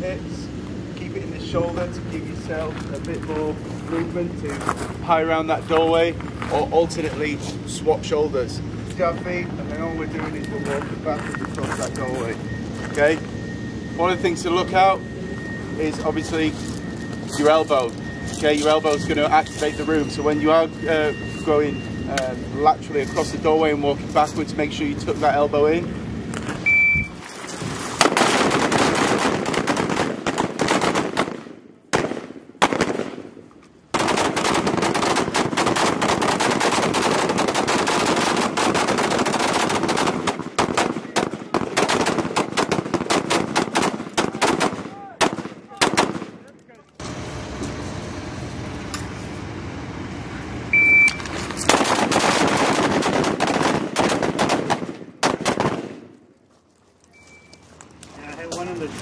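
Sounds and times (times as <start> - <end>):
short high beep: 10.2 - 23.8, 26.6 - 27.2, 50.7 - 51.3, 57.1 - 57.6
rifles firing rapid shots: 28.0 - 33.3, 33.9 - 46.4, 51.7 - 56.1.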